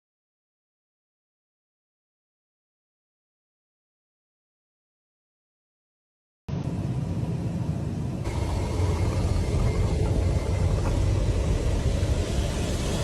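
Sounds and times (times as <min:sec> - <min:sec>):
roar of rushing air in cabin: 0:06.5 - 0:13.0.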